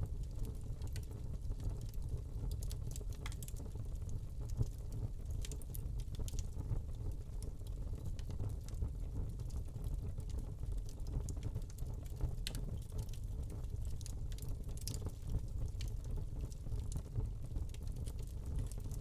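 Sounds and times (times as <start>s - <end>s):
burning log crackling: 1.8s - 19.0s.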